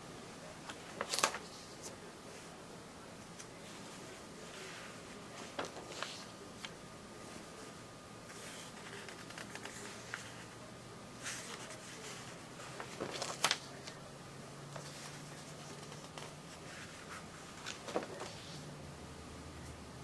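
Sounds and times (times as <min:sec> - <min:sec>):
low steady hum: 0:00.0 - 0:20.0
paper sheets rustling: 0:00.6 - 0:02.5, 0:03.4 - 0:10.6, 0:11.2 - 0:14.0, 0:14.7 - 0:18.7.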